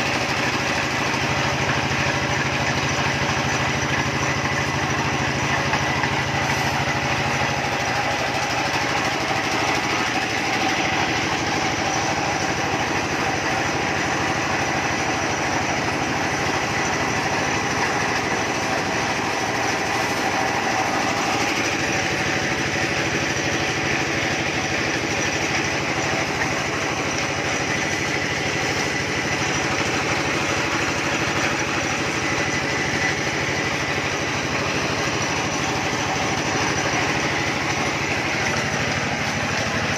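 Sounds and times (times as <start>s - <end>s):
drilling rig engine running: 0.0s - 39.9s.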